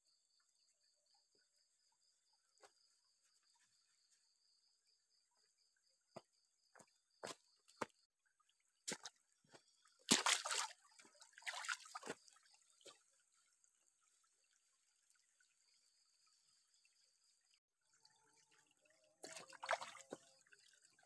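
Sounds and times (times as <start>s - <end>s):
water pouring and splashing: 8.4s - 15.7s, 17.8s - 21.0s.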